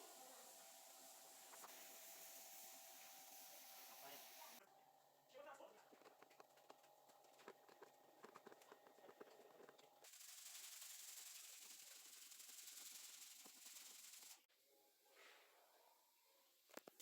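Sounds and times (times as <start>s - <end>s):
faint steady hiss: 0.0s - 5.2s.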